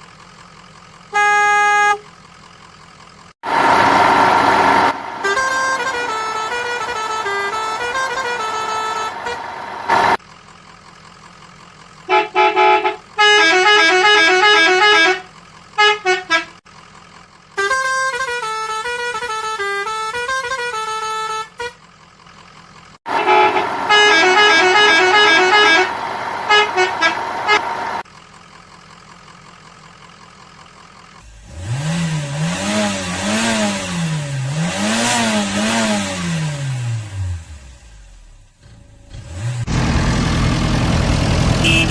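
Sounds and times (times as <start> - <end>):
toy beeping horn tunes: 1.2 - 2.1, 5.2 - 9.4, 17.6 - 21.8, 23.1 - 25.9, 41.6 - 41.9.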